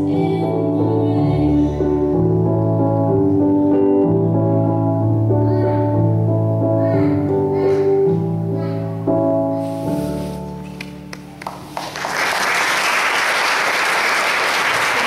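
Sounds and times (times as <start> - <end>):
sustained instrumental chords: 0.0 - 11.4.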